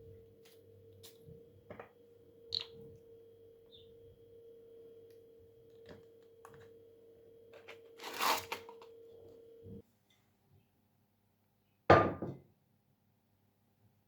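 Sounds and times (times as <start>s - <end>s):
faint steady hum: 0.0s - 10.4s
rustling: 7.6s - 8.8s.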